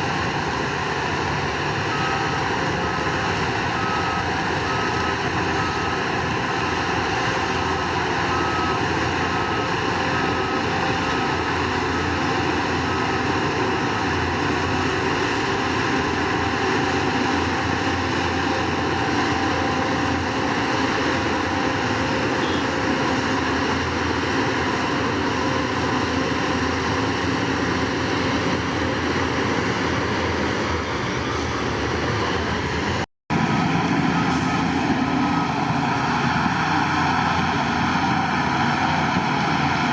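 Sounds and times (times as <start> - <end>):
bulldozer diesel engine drone: 0.0 - 39.9
faint backup alarm beeps: 22.3 - 23.2.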